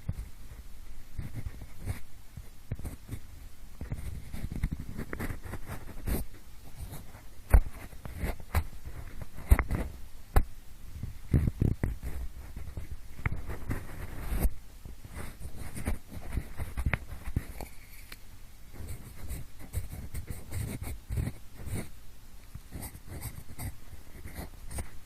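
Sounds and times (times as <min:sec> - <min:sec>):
pencil scratching and rubbing: 0:01.2 - 0:02.1, 0:02.8 - 0:03.2, 0:03.8 - 0:09.9, 0:11.4 - 0:14.5, 0:15.1 - 0:18.2, 0:18.8 - 0:21.9, 0:22.7 - 0:25.0.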